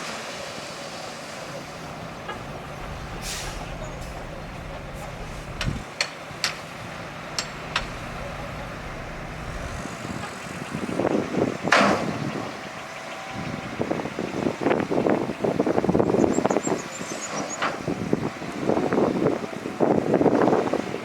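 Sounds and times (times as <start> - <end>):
machinery rumble: 1.3 - 15.1
dense clatter of clanks: 2.1 - 5.8, 7.3 - 9.8.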